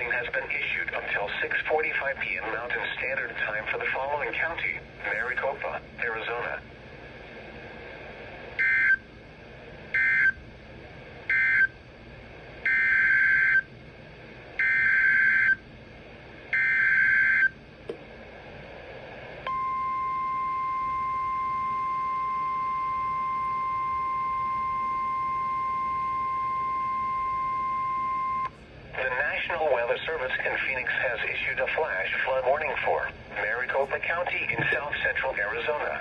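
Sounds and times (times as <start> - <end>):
steady weather radio alarm tone: 10.0 - 10.4, 12.7 - 13.6, 14.6 - 15.6, 16.6 - 17.6, 19.5 - 29.1.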